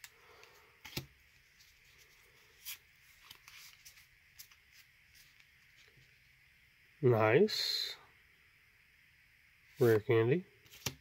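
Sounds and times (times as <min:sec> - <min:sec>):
trading cards rustling and clicking: 0:00.0 - 0:06.1, 0:10.6 - 0:11.0.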